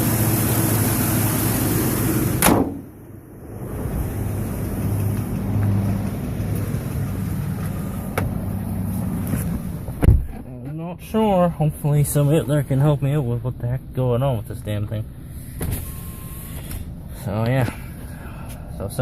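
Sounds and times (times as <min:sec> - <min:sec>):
sharp knock: 0:02.4 - 0:02.9.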